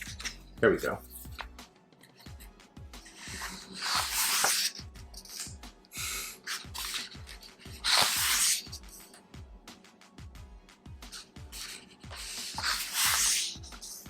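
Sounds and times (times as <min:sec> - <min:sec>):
book pages turning: 0:00.0 - 0:00.4, 0:03.1 - 0:05.5, 0:06.1 - 0:09.0, 0:11.1 - 0:14.0
background music with steady beat: 0:00.0 - 0:14.0.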